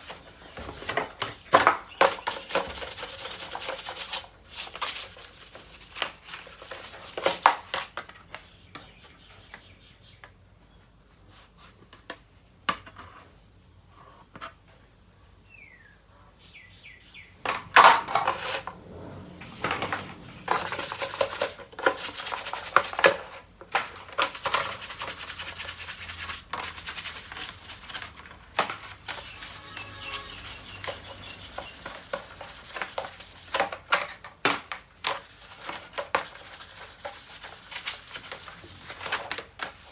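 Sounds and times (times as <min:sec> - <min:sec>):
scrubbing and rubbing: 0:01.8 - 0:08.0, 0:17.5 - 0:23.4, 0:24.0 - 0:34.2, 0:34.9 - 0:39.9
parts knocking and clattering: 0:17.4 - 0:25.2.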